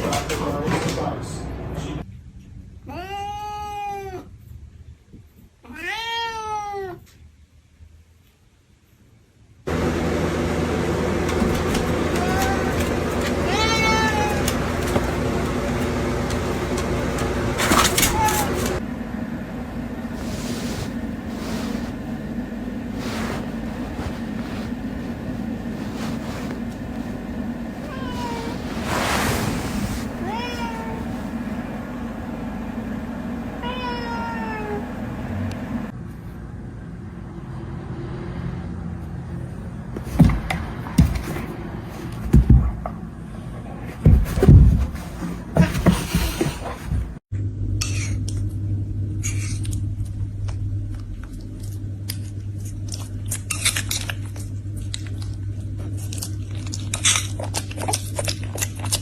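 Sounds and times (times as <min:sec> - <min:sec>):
cat meowing: 0:02.9 - 0:04.3, 0:05.6 - 0:07.0, 0:12.1 - 0:15.0, 0:17.8 - 0:18.8, 0:27.8 - 0:28.8, 0:30.0 - 0:31.4, 0:33.6 - 0:34.9
steady low hum: 0:09.7 - 0:37.5, 0:38.8 - 0:59.0
loud knocks and thumps: 0:40.0 - 0:41.6.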